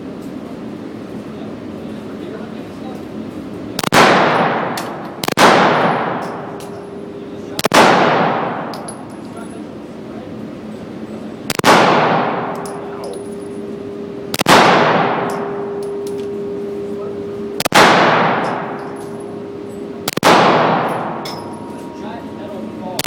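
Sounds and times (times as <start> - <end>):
handgun shots echoing: 3.8 - 6.8, 7.6 - 9.0, 11.5 - 13.2, 14.3 - 16.3, 17.6 - 19.3, 20.0 - 21.6.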